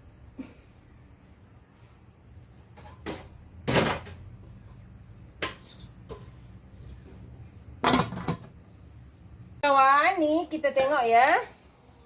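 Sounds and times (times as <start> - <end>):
kitchenware knocking and clattering: 7.8 - 8.6.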